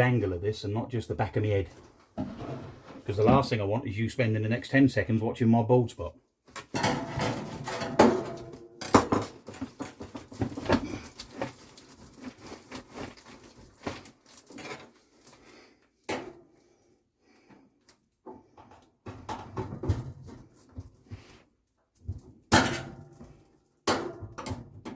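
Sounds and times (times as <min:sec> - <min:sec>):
rustling: 0:09.5 - 0:15.7.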